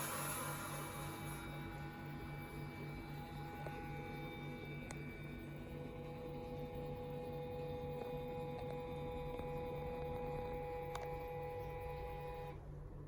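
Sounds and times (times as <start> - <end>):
electrical hum with tones: 0.0 - 13.0.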